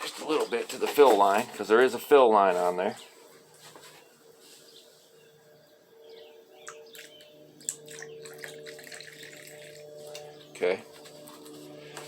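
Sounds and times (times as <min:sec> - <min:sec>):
low steady hum: 0:00.0 - 0:12.0
faint bird chirps: 0:03.9 - 0:09.4.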